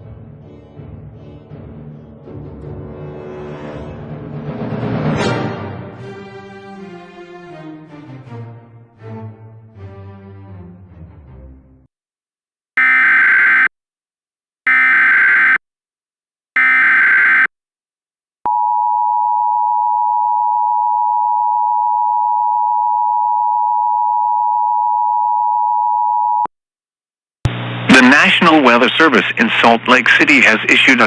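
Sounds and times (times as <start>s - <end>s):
two-tone attention signal: 12.8s - 13.7s, 14.7s - 15.6s, 16.6s - 17.5s.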